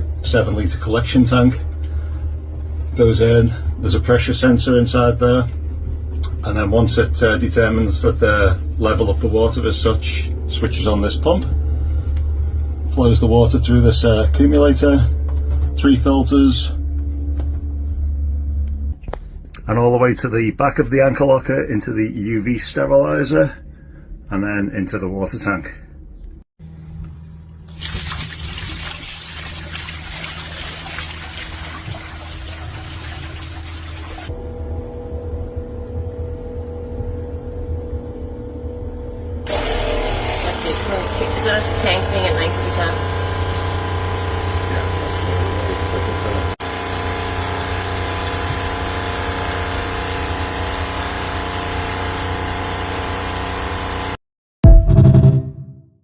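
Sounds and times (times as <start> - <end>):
low steady hum: 0.0 - 53.2
electric water pump humming: 26.6 - 37.8, 39.0 - 54.2
rainwater running and splashing: 27.7 - 34.3, 46.6 - 54.2.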